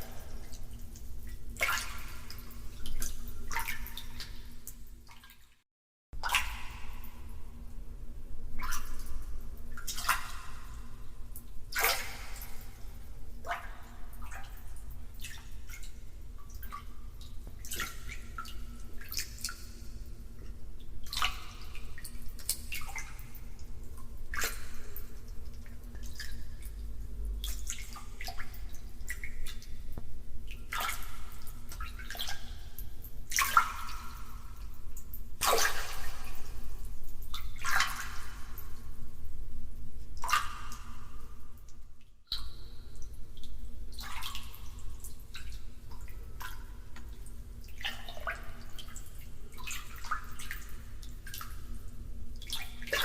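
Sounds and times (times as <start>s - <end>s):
water splashing in tiled room: 0.0s - 53.0s.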